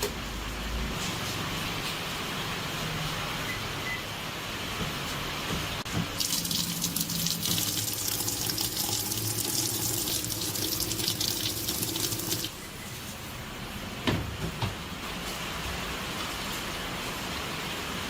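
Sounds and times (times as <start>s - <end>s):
water running: 6.0s - 12.6s.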